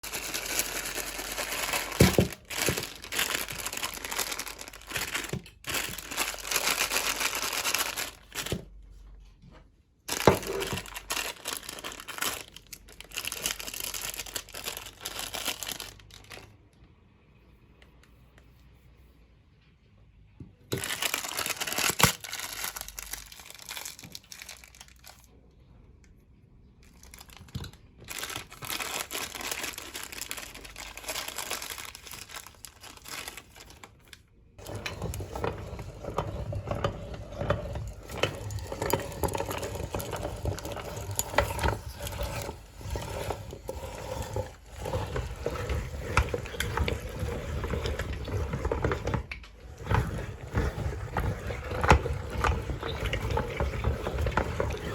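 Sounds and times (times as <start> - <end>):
wrappers crinkling and tearing: 0.0 - 8.8, 10.1 - 16.6, 20.7 - 25.3, 26.8 - 36.9.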